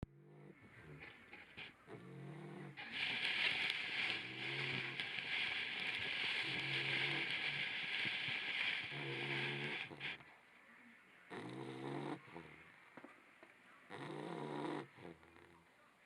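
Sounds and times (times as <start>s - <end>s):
puppy snoring: 0.0s - 10.2s, 11.3s - 12.7s, 13.9s - 15.7s
steady hissing rustle: 0.6s - 15.8s.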